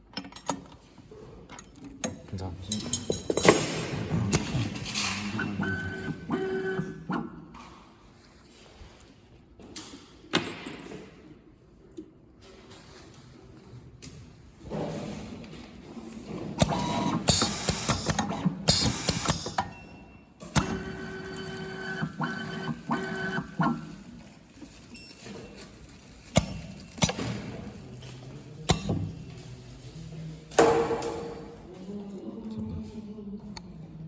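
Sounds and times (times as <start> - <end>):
machine whirring: 4.0 - 7.2, 16.6 - 19.6, 20.6 - 23.9
machine hiss bursts: 16.8 - 19.6.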